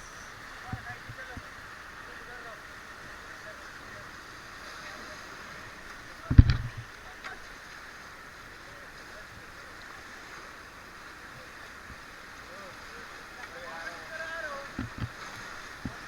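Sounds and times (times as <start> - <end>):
river water rushing: 0.0 - 16.0.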